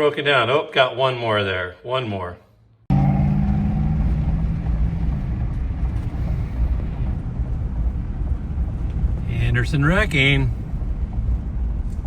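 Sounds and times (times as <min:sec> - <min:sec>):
vehicle engine and road rumble: 0:02.8 - 0:12.0
engine hum: 0:02.9 - 0:12.0.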